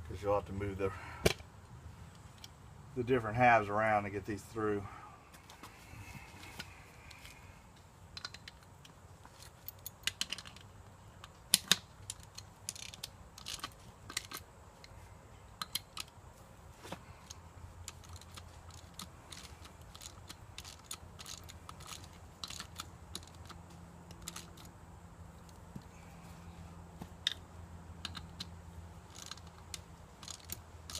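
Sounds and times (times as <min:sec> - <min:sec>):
metal bolts and nuts clicking: 0:08.1 - 0:14.5, 0:15.5 - 0:16.2, 0:17.2 - 0:24.8, 0:28.0 - 0:30.9.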